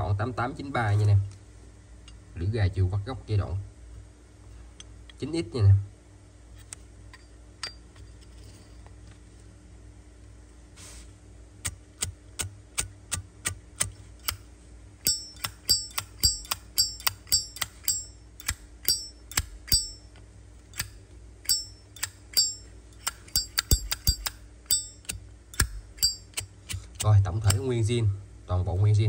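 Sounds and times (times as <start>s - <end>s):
lighter lid clicking open and shut: 15.0s - 20.0s, 20.7s - 27.7s
bright metallic ringing ping: 15.0s - 20.1s, 20.8s - 26.4s.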